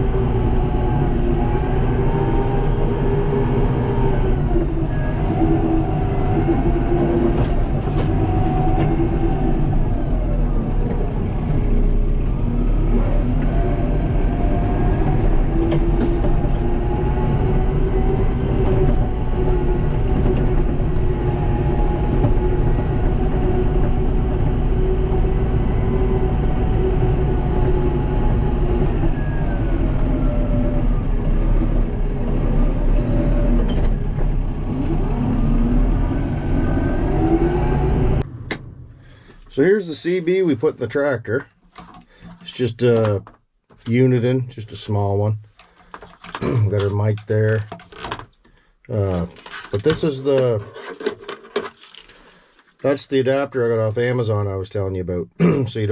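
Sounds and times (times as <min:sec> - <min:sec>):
tractor diesel engine running: 0:00.0 - 0:43.0.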